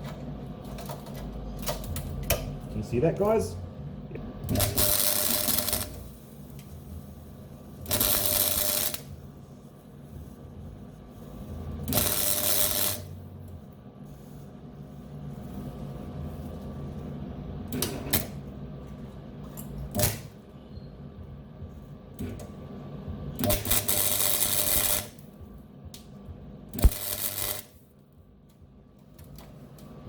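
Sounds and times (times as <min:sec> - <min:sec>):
steady low hum: 0:00.0 - 0:30.0
welder arc crackling: 0:04.4 - 0:13.8, 0:19.9 - 0:20.4, 0:23.3 - 0:25.4, 0:26.8 - 0:28.0.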